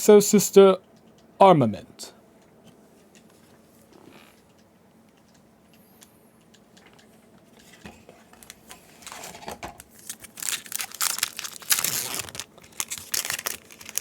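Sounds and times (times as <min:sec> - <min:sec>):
foil wrapper crinkling: 0:08.4 - 0:14.0.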